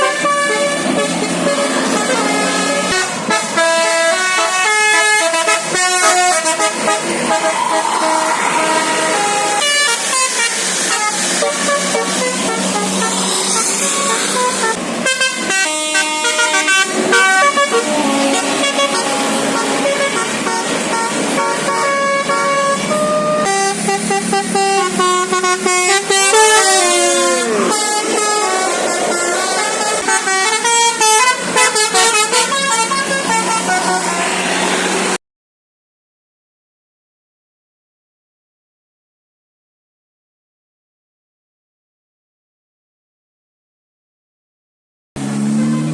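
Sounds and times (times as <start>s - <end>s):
bus horn playing a tune: 0.0s - 35.2s, 45.4s - 45.9s.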